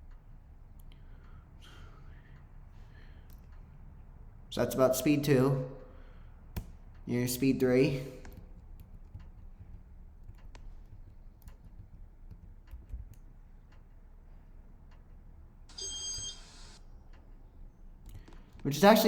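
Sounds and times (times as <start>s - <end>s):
light ticks: 0.0s - 1.5s, 8.2s - 15.6s
ceiling fan humming: 0.0s - 19.0s.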